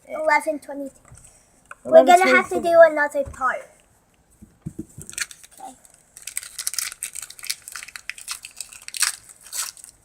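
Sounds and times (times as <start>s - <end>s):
foil wrapper crinkling: 5.0s - 10.0s.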